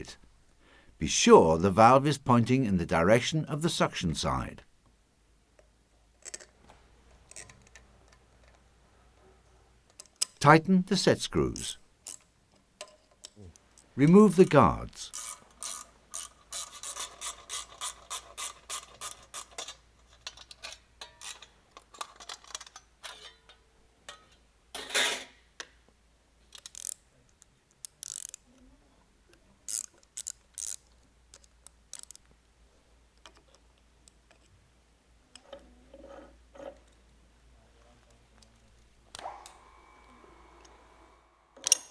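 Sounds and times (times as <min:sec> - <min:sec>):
ratchet wrench clicking: 0:11.6 - 0:12.3, 0:15.1 - 0:21.5, 0:26.5 - 0:27.0, 0:27.8 - 0:28.4, 0:29.7 - 0:32.2
metallic clicks and knocks: 0:11.6 - 0:13.9, 0:15.2 - 0:25.8, 0:29.7 - 0:32.3.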